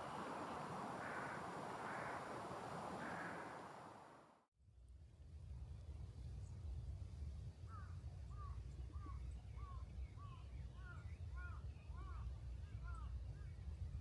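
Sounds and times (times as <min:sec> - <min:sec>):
birds calling: 0:00.0 - 0:03.8.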